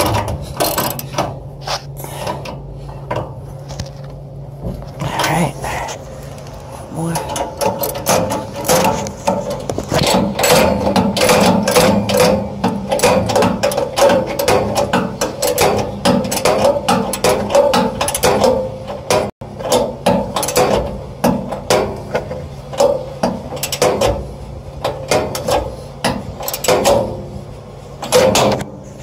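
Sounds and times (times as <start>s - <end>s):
ratchet wrench clicking: 0.6s - 1.2s.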